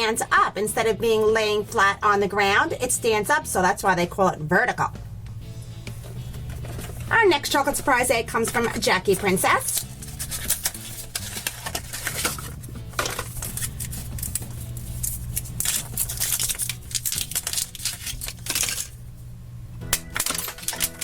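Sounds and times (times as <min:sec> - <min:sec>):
soft background music: 0:00.0 - 0:21.0
foil wrapper crinkling and tearing: 0:09.2 - 0:19.1, 0:20.0 - 0:21.0.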